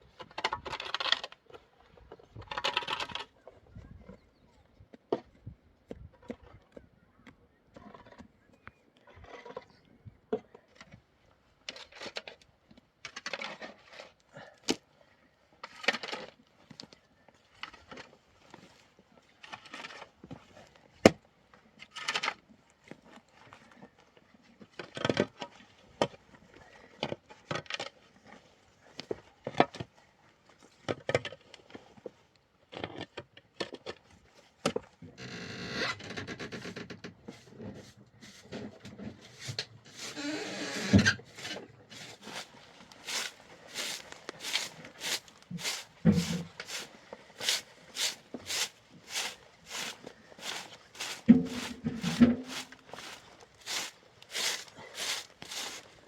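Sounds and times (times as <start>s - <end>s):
scraping and rustling: 37.3s - 56.0s.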